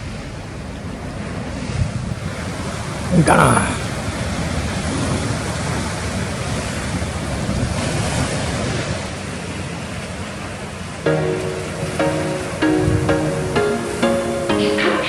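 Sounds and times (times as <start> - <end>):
wind buffeting microphone: 0.0 - 9.3
ocean surf washing in: 0.0 - 15.0.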